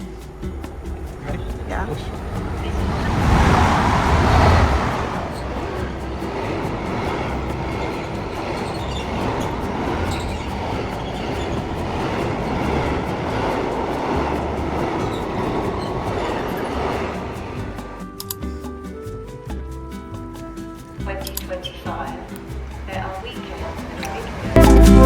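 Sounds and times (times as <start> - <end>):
train wheels on track: 0.3 - 17.8.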